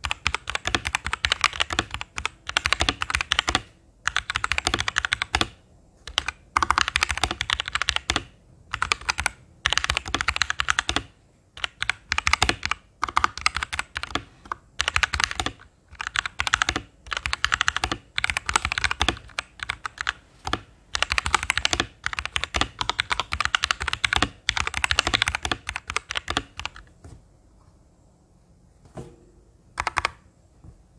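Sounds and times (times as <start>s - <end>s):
mechanical keyboard typing clacks: 0.0s - 26.9s, 29.8s - 30.2s.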